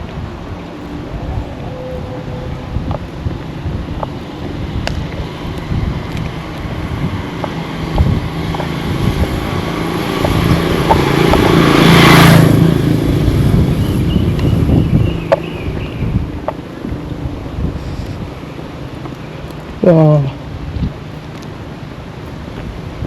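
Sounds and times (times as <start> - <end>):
motor vehicle passing: 0.0 - 23.0
wind buffeting microphone: 0.0 - 23.0.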